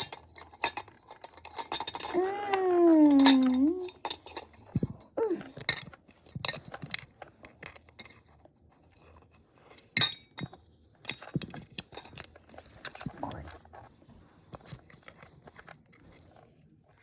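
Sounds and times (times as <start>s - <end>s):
forks clinking against dishes: 3.0s - 4.9s, 10.0s - 12.3s.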